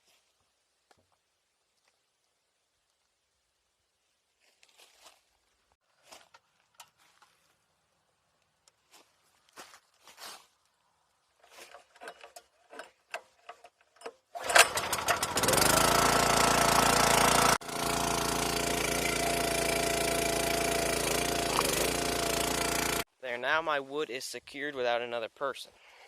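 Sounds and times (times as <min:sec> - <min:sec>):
handling knocks and clicks: 0:11.4 - 0:14.6
motor spinning up and running: 0:14.6 - 0:23.0.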